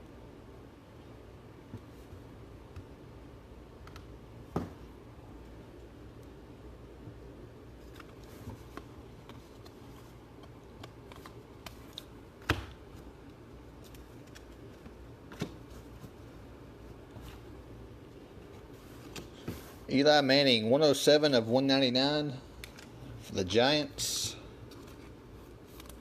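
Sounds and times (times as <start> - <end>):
low steady hum: 0.0 - 26.0
trading cards clicking and rustling: 7.8 - 12.2, 12.8 - 16.0.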